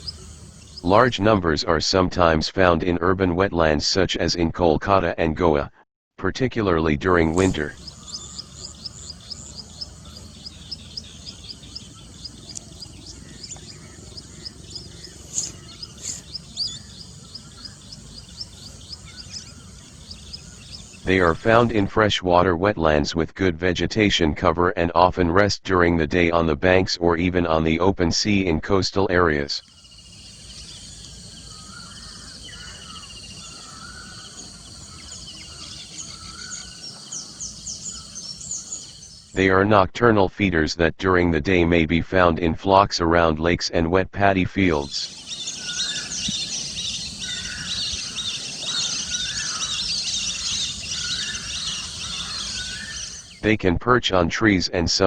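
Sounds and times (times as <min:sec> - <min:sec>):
insects trilling: 0:00.0 - 0:01.1, 0:07.3 - 0:21.4, 0:29.6 - 0:39.4, 0:44.9 - 0:53.4
birds chirping: 0:00.0 - 0:01.6, 0:06.6 - 0:21.8, 0:29.6 - 0:39.6, 0:44.6 - 0:53.5
low rumbling hiss: 0:00.0 - 0:02.7, 0:06.4 - 0:21.9, 0:29.4 - 0:40.1, 0:44.6 - 0:53.6.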